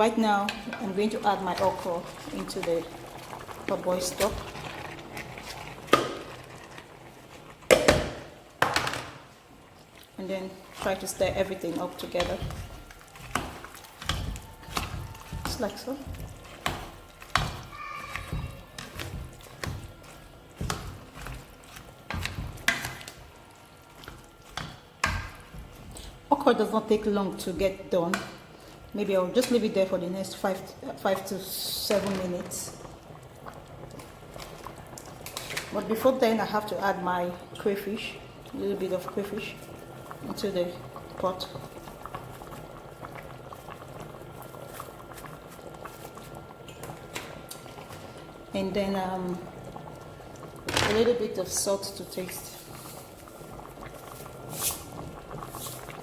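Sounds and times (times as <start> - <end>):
soup bubbling on the boil: 0.0 - 56.0
spoon knocking and scraping pot: 10.8 - 23.1.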